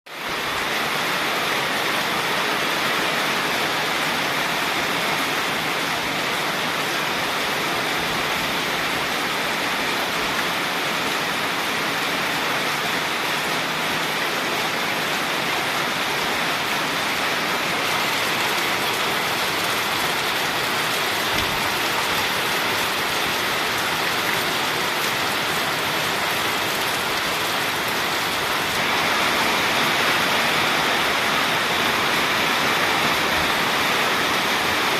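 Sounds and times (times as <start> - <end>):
heavy rain pouring: 0.1 - 34.9.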